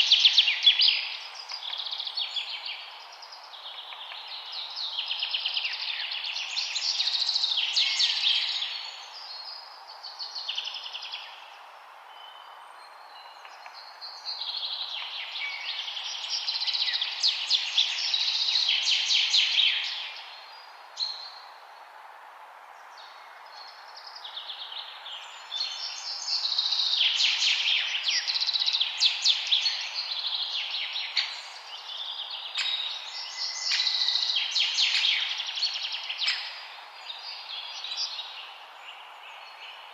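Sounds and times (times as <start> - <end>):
steady background hiss: 0.0 - 39.9
songbirds trilling: 23.1 - 39.9.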